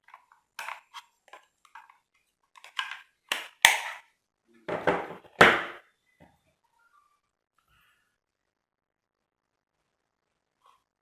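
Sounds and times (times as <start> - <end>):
hard objects clicking and knocking: 2.6 - 4.0.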